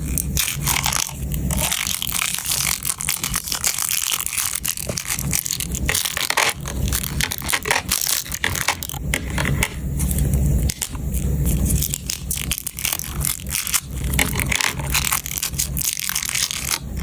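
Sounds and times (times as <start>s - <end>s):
batteries clicking in plastic case: 0.2s - 9.8s.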